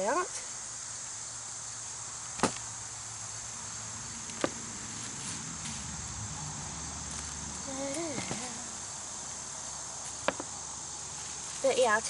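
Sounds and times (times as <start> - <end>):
crickets chirring: 0.0 - 12.0
sharp knocks: 10.2 - 10.5.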